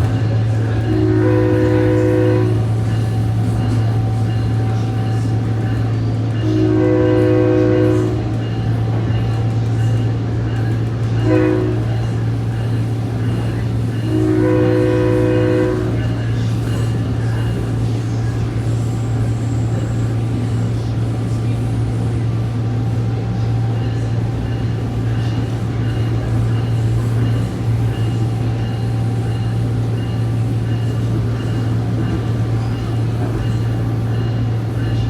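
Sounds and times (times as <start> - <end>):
train low drone: 0.0 - 35.0
train horn: 0.8 - 2.8, 6.4 - 8.4, 11.2 - 12.1, 14.0 - 16.2.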